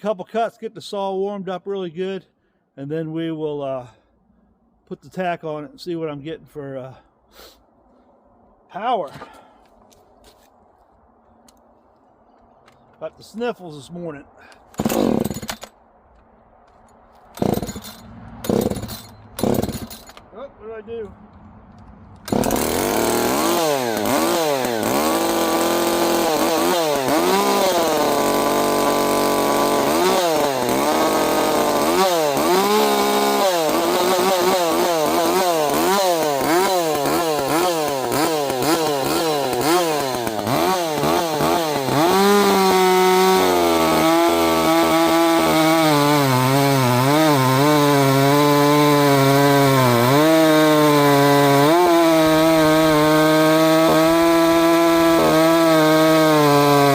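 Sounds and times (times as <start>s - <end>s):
chainsaw cutting wood: 14.5s - 15.8s, 16.7s - 20.2s, 22.2s - 56.9s.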